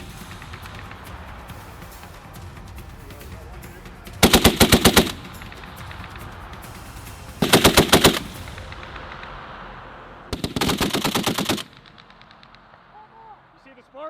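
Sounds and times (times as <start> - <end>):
machine gun bursts: 7.4 - 9.1, 10.3 - 12.5.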